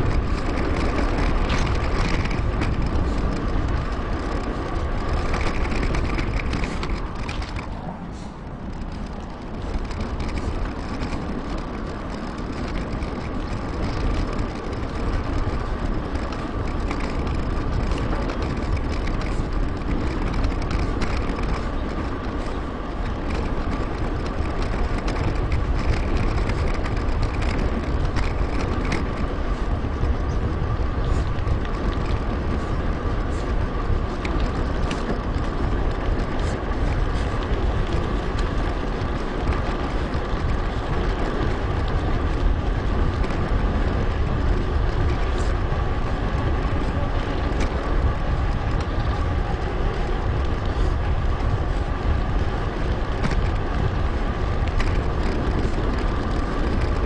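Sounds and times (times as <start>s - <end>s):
bike tyres rolling on pavement: 0.0s - 57.0s
wind on microphone: 0.0s - 57.0s.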